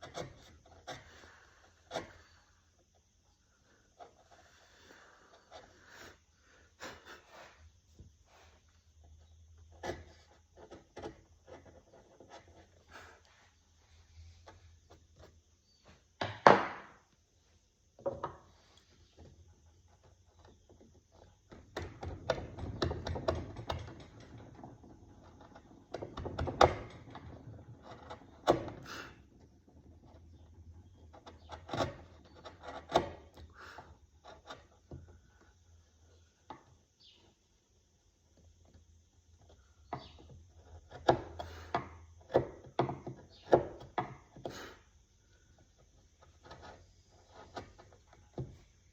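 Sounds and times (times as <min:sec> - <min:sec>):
knife scraping cuts on wood: 0:00.0 - 0:02.4
taps and knocks on wood: 0:15.9 - 0:17.0, 0:39.9 - 0:44.6.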